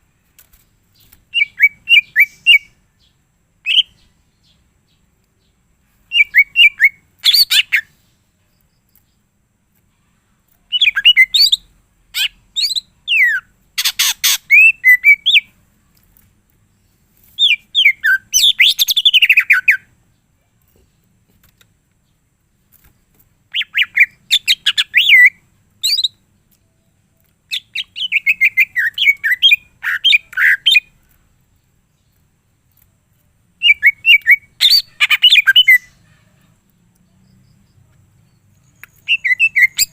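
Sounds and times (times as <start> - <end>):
bird singing fast varied chirps: 1.0 - 9.3, 10.7 - 15.6, 17.4 - 20.4, 23.5 - 32.3, 33.6 - 39.9.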